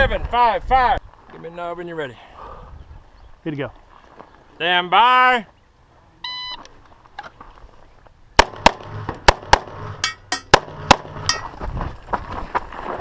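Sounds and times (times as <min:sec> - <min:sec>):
pistol shots: 0:08.4 - 0:11.4.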